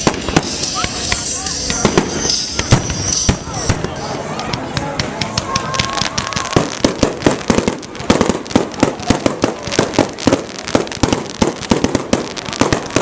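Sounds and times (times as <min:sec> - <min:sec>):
fireworks bangs and crackles: 0:00.0 - 0:13.0.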